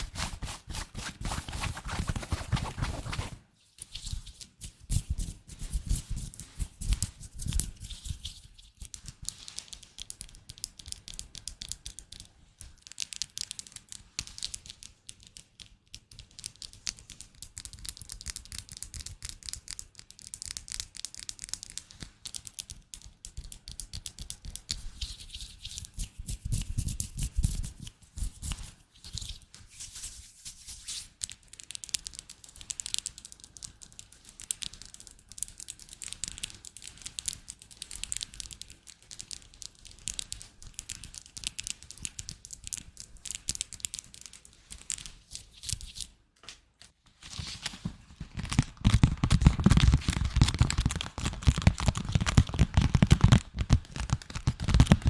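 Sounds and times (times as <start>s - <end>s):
crinkly scratching: 0.0s - 10.4s, 47.1s - 55.0s.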